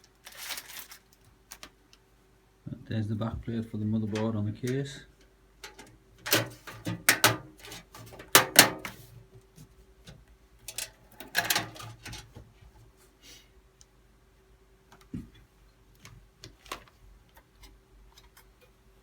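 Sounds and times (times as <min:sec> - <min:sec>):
metal plate clicking and clattering: 0:05.6 - 0:09.0, 0:10.7 - 0:12.3.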